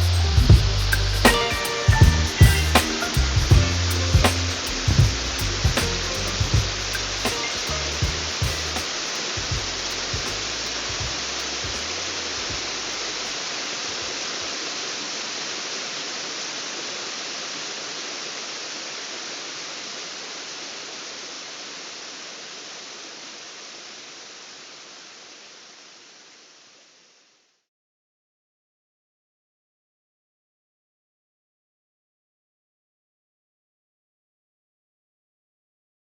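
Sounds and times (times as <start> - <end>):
low music beat thumps: 0.0 - 13.0
steady rushing noise: 0.0 - 14.3.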